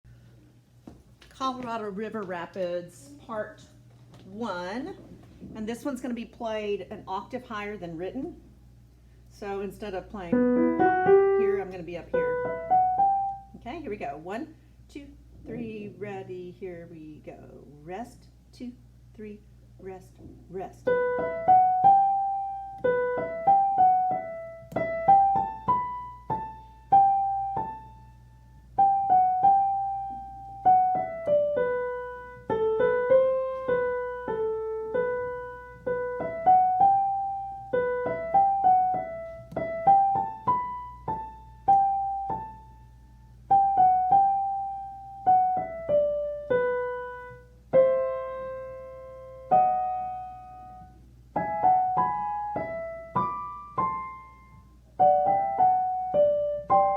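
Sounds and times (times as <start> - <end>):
high piano melody: 10.2 - 13.5, 20.9 - 56.9.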